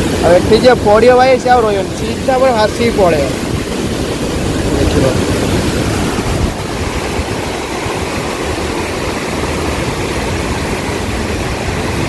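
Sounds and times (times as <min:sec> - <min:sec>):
water rushing through gates: 0:00.0 - 0:12.0.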